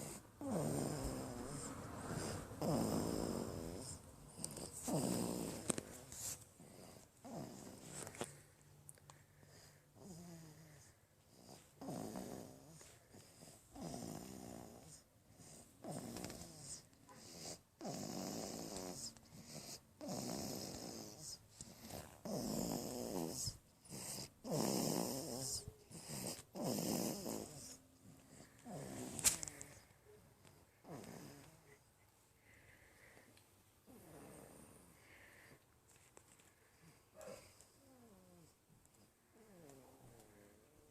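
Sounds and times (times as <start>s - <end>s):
baby snoring: 0.0s - 8.4s, 9.4s - 29.9s, 30.7s - 31.8s, 33.8s - 35.6s.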